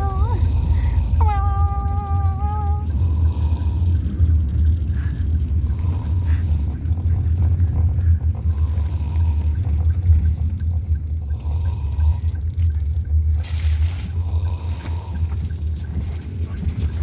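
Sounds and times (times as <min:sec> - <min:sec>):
child snoring: 0:00.0 - 0:04.2, 0:08.4 - 0:09.7, 0:14.1 - 0:15.4
loud steady low rumble: 0:00.0 - 0:17.0.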